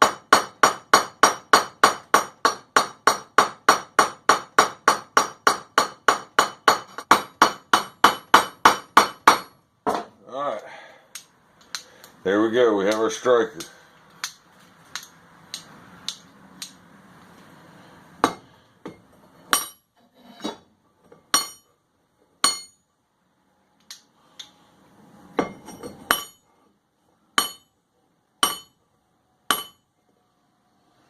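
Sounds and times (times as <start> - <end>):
hammer striking steel: 0.0 - 10.1, 12.9 - 16.8, 18.2 - 19.9, 21.3 - 21.7, 22.4 - 22.9, 25.4 - 26.4, 27.4 - 27.7, 28.4 - 28.8, 29.5 - 29.9.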